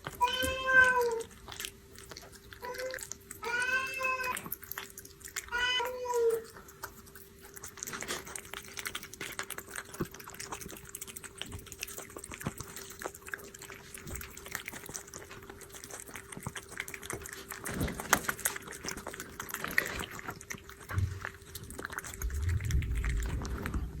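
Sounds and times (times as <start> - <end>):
cat licking and chewing: 0.0 - 24.0
low thuds: 22.2 - 24.0.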